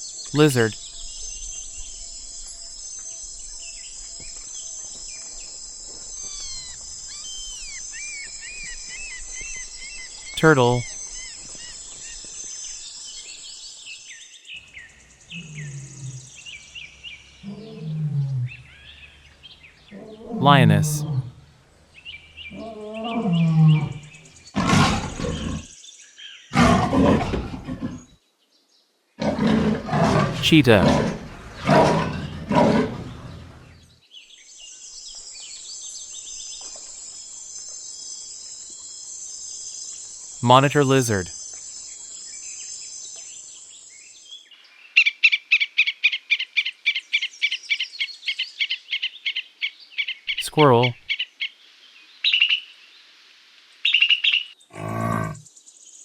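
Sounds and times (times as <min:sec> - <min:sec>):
lioness roaring: 0:22.6 - 0:25.6, 0:26.6 - 0:28.0, 0:29.2 - 0:33.7, 0:54.7 - 0:55.4.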